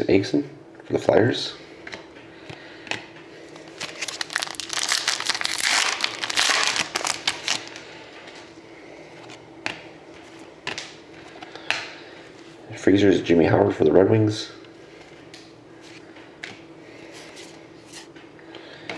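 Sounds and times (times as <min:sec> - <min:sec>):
card packaging crinkling: 0:03.6 - 0:07.9.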